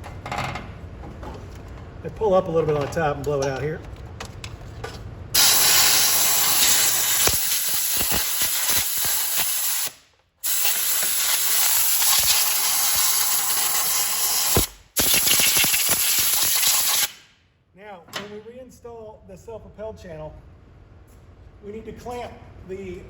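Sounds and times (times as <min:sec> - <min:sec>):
compressed air blow gun hissing: 0:05.4 - 0:17.2.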